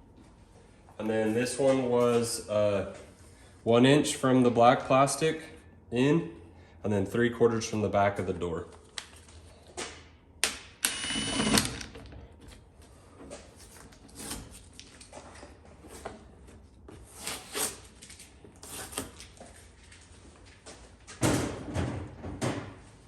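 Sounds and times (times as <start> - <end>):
drill whine cutting plastic: 10.8 - 11.9.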